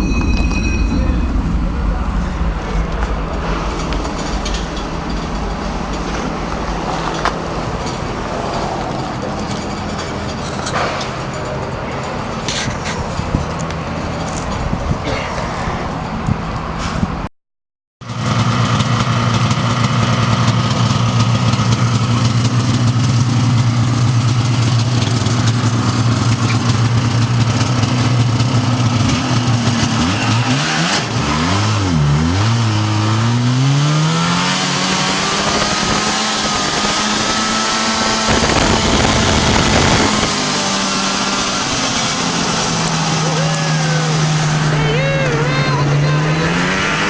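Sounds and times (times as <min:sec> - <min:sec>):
snowmobile engine running: 0:18.1 - 0:47.0.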